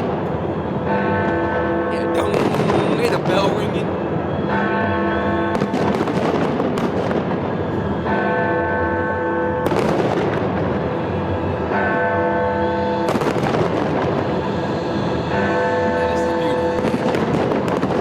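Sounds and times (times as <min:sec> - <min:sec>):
fireworks banging and crackling: 0:05.7 - 0:07.6.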